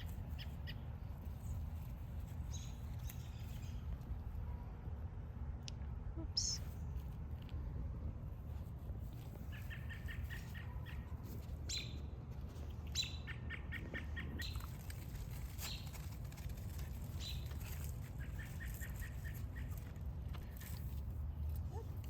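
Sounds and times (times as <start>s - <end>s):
steady low rumble: 0.0s - 22.0s
birds chirping: 6.2s - 6.7s.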